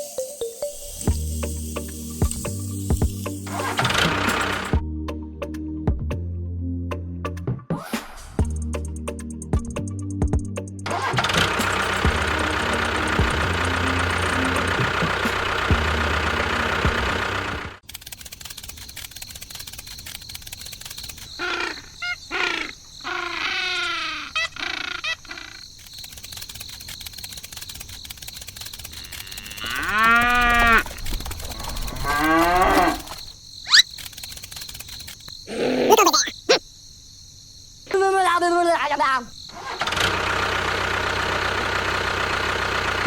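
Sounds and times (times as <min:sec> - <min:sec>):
small engine running: 0:00.0 - 0:04.8, 0:10.9 - 0:21.3, 0:25.8 - 0:33.3, 0:39.5 - 0:43.0
cattle mooing: 0:29.0 - 0:30.9, 0:31.5 - 0:33.2.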